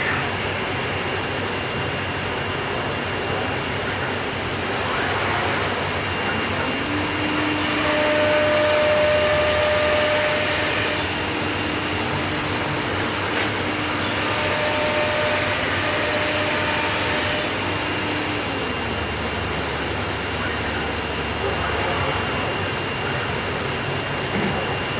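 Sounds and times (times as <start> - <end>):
router motor whine: 4.6 - 22.6.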